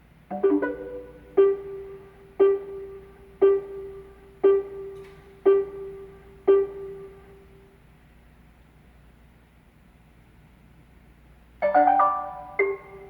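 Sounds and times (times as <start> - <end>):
piano-like electronic chime: 11.6 - 13.0.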